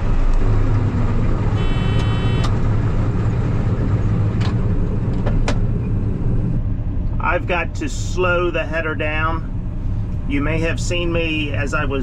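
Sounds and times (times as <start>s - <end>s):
combine harvester running: 0.1s - 12.0s
brief high tone: 1.6s - 2.5s.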